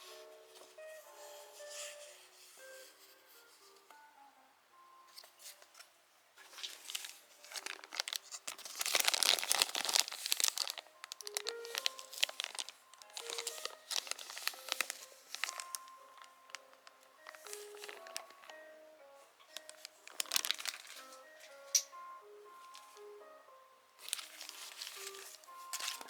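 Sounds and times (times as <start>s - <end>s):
soft background music: 0.0s - 26.0s
packaging crinkling and tearing: 6.5s - 18.6s, 19.5s - 21.3s, 24.0s - 26.0s.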